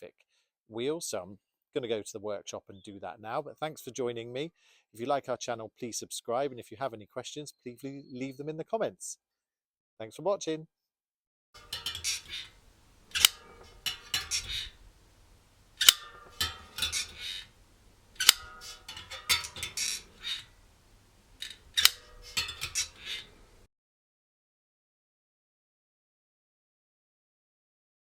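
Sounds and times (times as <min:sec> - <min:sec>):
sharp metallic clicks: 0:11.6 - 0:23.6
metallic scraping and rattling: 0:11.6 - 0:23.7.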